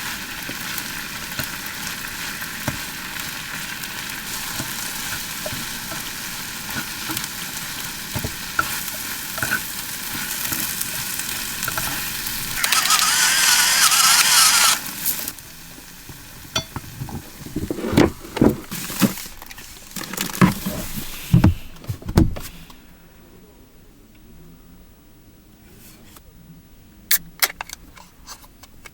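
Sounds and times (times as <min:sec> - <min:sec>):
food sizzling in a pan: 0:00.0 - 0:16.9.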